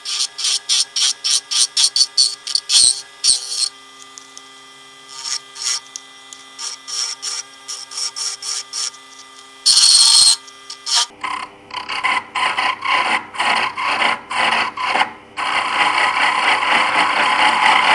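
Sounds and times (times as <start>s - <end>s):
tool scraping spinning wood: 0.0s - 3.8s, 5.0s - 17.9s
lathe motor hum: 11.9s - 17.9s.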